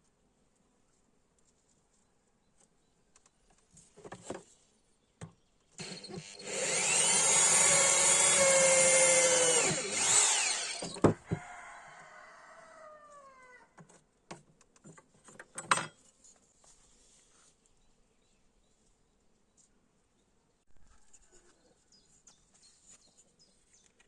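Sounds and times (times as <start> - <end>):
short rasping burst: 5.8 - 11.0
electric power tool whining: 5.8 - 11.3.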